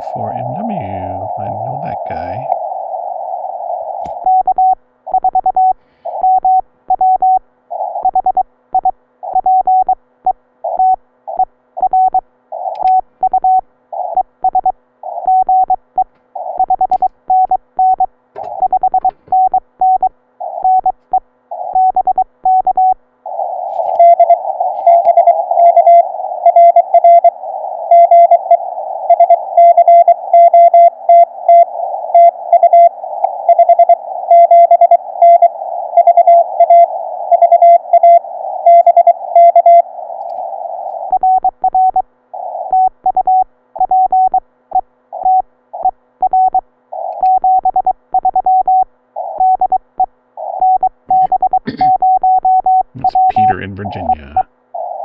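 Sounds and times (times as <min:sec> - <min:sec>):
lower pitched morse code: 0:00.0 - 0:02.6, 0:45.2 - 0:55.0
radio band hiss: 0:00.0 - 0:02.6, 0:53.0 - 0:54.5
morse code tone: 0:23.8 - 0:27.3, 0:50.6 - 0:54.5.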